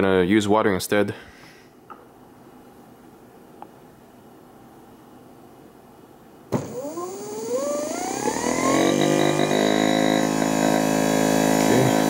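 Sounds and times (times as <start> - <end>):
refrigerator compressor whine and hum: 6.5 - 12.0.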